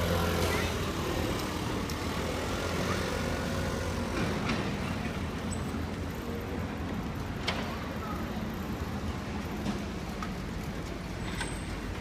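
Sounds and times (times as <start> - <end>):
traffic rumble: 0.0 - 12.0.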